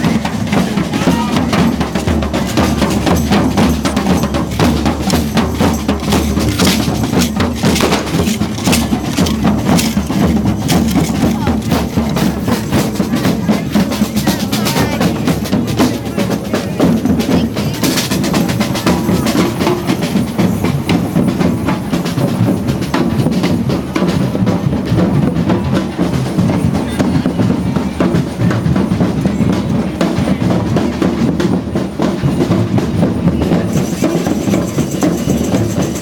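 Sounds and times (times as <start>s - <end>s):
drum band playing: 0.0s - 36.0s.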